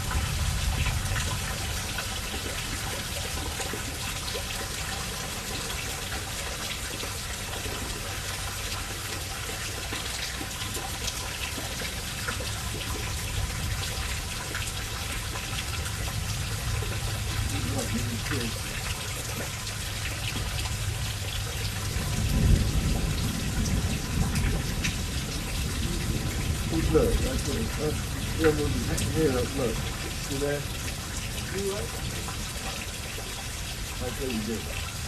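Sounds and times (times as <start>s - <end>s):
steady rain falling: 0.0s - 35.0s
water running and splashing: 0.0s - 35.0s
drops ticking: 24.4s - 34.9s.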